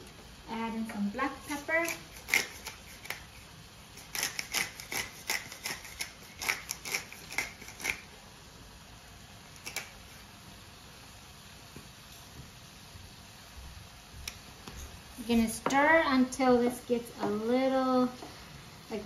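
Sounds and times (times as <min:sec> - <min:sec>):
pepper grinder clicking: 0:04.0 - 0:08.0, 0:09.6 - 0:09.9.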